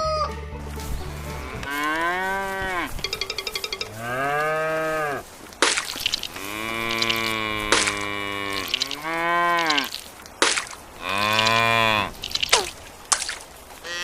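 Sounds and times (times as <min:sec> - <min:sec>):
cow mooing: 0:01.1 - 0:05.2, 0:06.4 - 0:09.9, 0:11.0 - 0:12.2.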